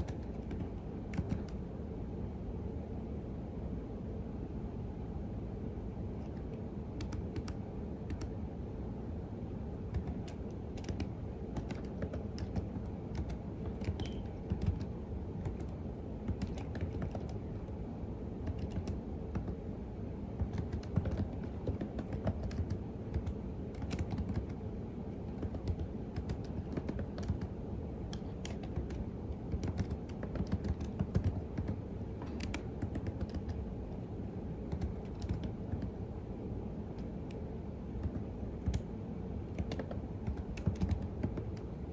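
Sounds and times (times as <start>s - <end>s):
computer keyboard typing: 0.0s - 1.6s, 6.2s - 8.4s, 9.9s - 17.8s, 18.4s - 19.6s, 20.4s - 24.6s, 25.2s - 33.8s, 34.6s - 36.0s, 38.0s - 38.9s, 39.5s - 41.7s
low background rumble: 0.0s - 41.9s.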